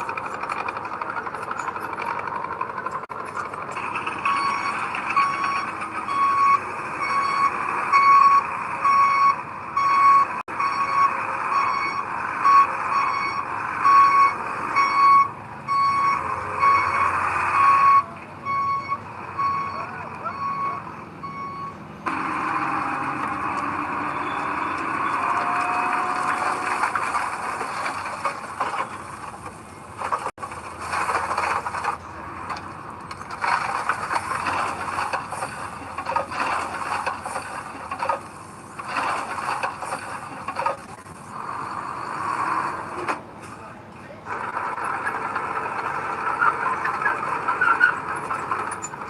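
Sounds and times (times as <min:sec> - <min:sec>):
soil scraping and squeals: 0:00.0 - 0:20.9, 0:22.0 - 0:49.0
earthmoving machinery diesel engine: 0:00.0 - 0:49.0
truck reversing alarm beeps: 0:00.6 - 0:27.3, 0:46.4 - 0:49.0.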